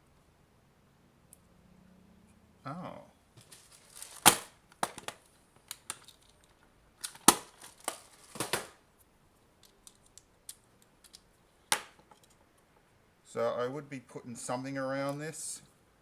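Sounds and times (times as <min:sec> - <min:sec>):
hard plastic clicks and clatters: 0:03.4 - 0:08.8.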